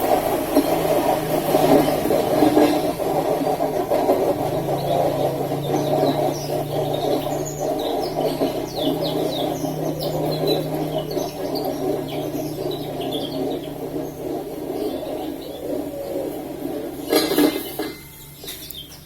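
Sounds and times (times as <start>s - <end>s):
spin dryer whirring: 0.0s - 19.0s.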